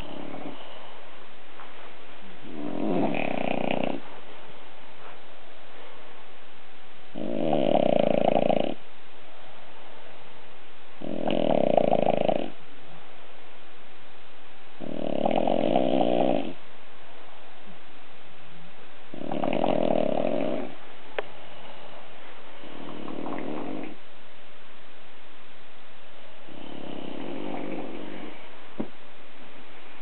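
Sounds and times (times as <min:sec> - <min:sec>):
dogs snoring: 0:00.0 - 0:00.9, 0:02.4 - 0:04.1, 0:07.1 - 0:08.8, 0:11.0 - 0:12.6, 0:14.8 - 0:16.6, 0:19.1 - 0:20.8, 0:22.5 - 0:24.0, 0:26.2 - 0:28.9.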